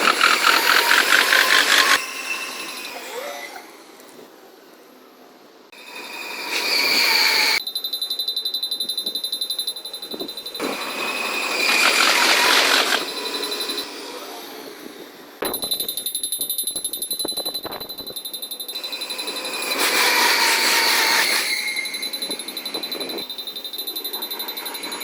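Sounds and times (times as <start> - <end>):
level crossing warning bell: 7.5 - 19.9, 21.6 - 25.0.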